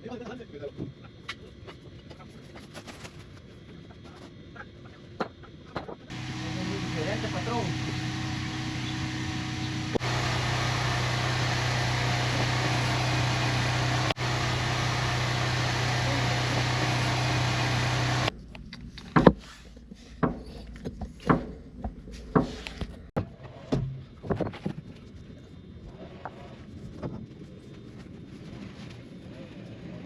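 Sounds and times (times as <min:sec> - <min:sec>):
machine humming and hissing: 0:06.1 - 0:18.3.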